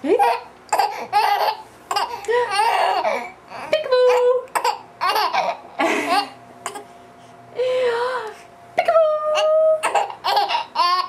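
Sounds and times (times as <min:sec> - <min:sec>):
baby laughing: 0:00.1 - 0:03.3, 0:04.1 - 0:06.4, 0:09.4 - 0:11.0.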